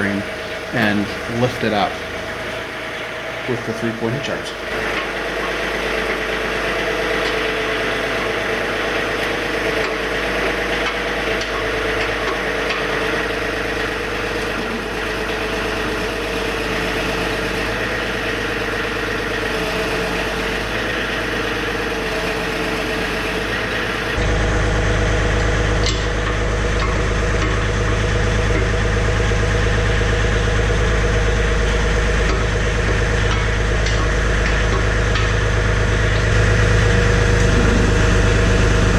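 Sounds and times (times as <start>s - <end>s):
tractor diesel engine running: 0.0s - 38.9s
deep low rumble: 35.6s - 38.9s.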